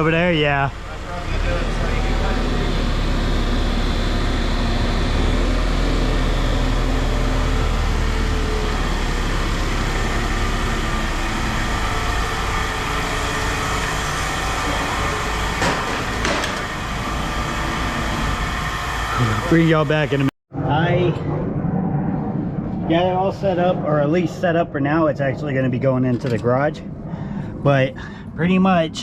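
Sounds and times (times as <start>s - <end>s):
vehicle engine running: 0.0s - 20.3s.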